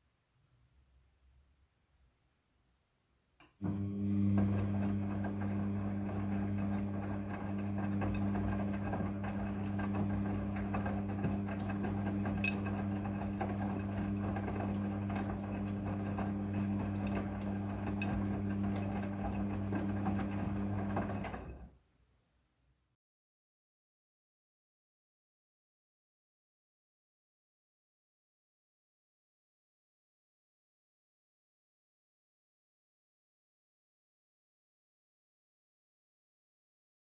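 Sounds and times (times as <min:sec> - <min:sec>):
washing machine motor hum: 0:03.6 - 0:21.7.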